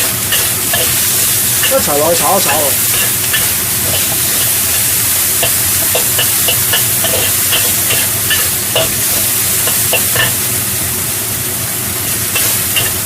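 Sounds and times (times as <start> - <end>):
meat sizzling in a wok: 0.0 - 13.0
spatula scraping and tapping pan: 2.9 - 10.4.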